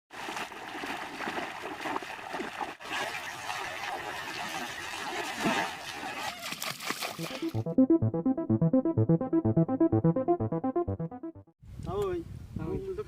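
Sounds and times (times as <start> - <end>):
water splashing and trickling: 0.1 - 7.6.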